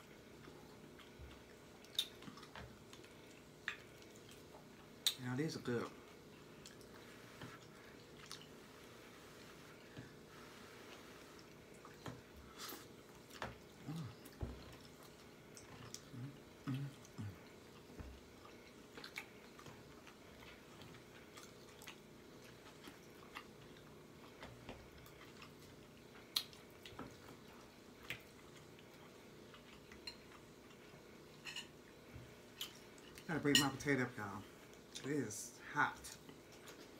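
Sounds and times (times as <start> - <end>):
person chewing and mouth smacking: 0.3 - 5.2, 6.3 - 8.6, 11.3 - 31.2.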